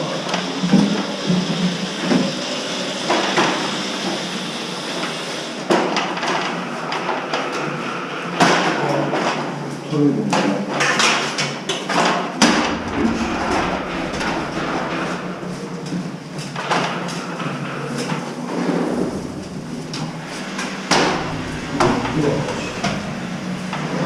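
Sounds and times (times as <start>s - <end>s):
diesel engine running: 12.6s - 16.4s, 18.8s - 24.0s
heavy metal knocks and clanks: 12.6s - 16.4s, 18.8s - 24.0s.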